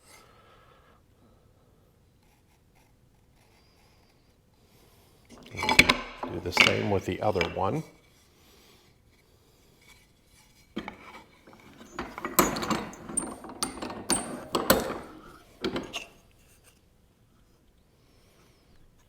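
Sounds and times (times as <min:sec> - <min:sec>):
wood rubbing and scraping: 0:05.3 - 0:08.1, 0:09.9 - 0:16.6
wooden knocks: 0:05.4 - 0:07.8.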